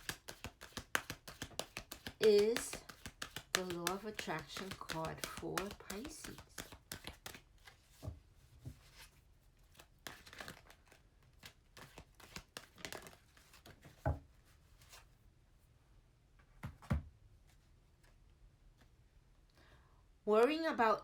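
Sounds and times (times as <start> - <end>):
cards rustling and flicking: 0.0 - 8.0, 8.8 - 14.0.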